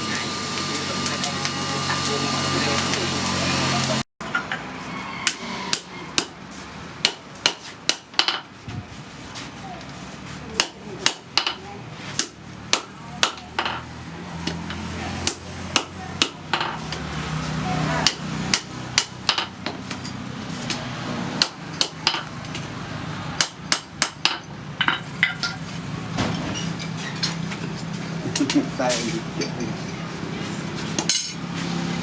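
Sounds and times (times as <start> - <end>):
hammer striking steel on anvil: 5.2 - 6.4, 18.0 - 20.8.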